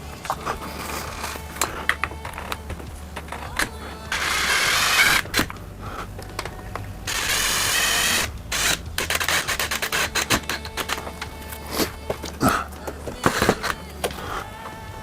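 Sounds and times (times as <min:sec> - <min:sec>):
cordless drill whirring: 0:04.1 - 0:05.5, 0:07.1 - 0:11.1.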